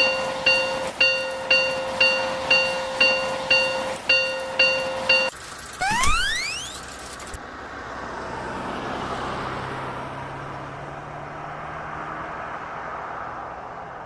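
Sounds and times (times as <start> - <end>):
vehicle passing by: 7.5 - 14.0.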